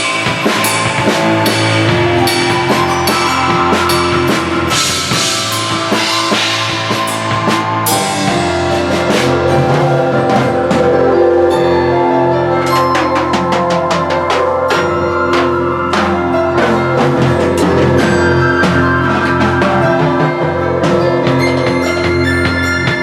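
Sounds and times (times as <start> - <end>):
drum kit and cymbals: 0.0 - 23.0
piano chords: 0.0 - 23.0.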